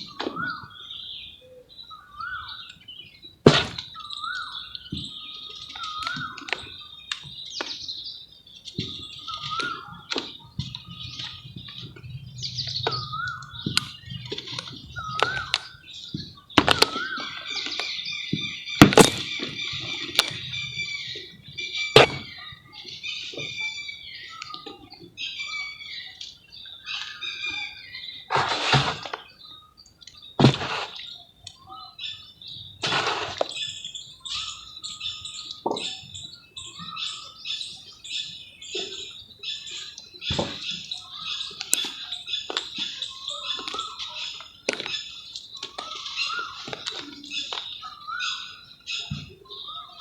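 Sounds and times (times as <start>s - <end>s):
birds chirping: 0.0s - 50.0s
wet mud crumbling: 3.5s - 4.0s, 22.0s - 22.4s, 28.3s - 29.3s, 30.4s - 31.0s
mud crumbling in water: 3.5s - 4.4s, 30.4s - 31.0s, 32.8s - 33.6s
bird warbling call: 3.5s - 7.0s, 9.0s - 26.2s, 32.8s - 50.0s.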